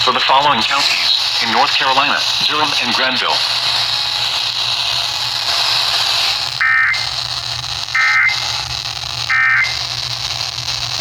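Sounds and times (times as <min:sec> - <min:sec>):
steady radio hiss: 0:00.0 - 0:11.0
digital data tone bursts: 0:06.6 - 0:07.2, 0:07.9 - 0:08.7, 0:09.3 - 0:10.0.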